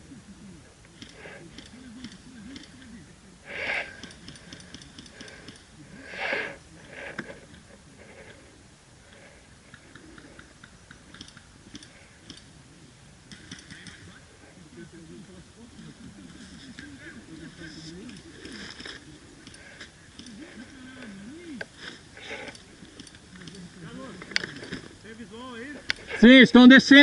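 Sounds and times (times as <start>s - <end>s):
person breathing close: 3.4s - 10.6s, 18.1s - 23.3s
small clicks: 9.7s - 12.5s.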